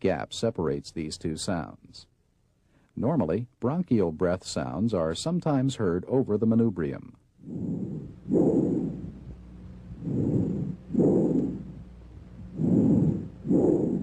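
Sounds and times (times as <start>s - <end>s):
breath sounds through stethoscope: 7.4s - 14.0s.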